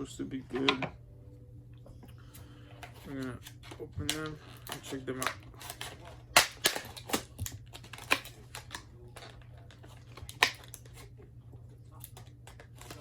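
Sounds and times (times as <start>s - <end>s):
packaging crackling: 2.8s - 11.1s, 12.0s - 13.0s.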